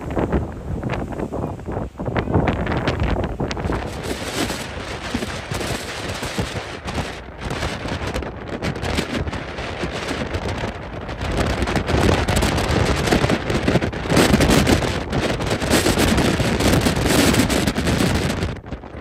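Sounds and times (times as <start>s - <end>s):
heavy surf rushing: 0.0s - 19.0s
storm wind buffeting microphone: 0.0s - 19.0s.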